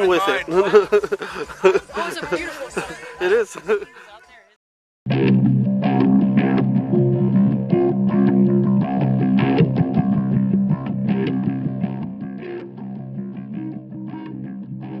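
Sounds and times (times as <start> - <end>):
electric guitar music: 5.1 - 15.0.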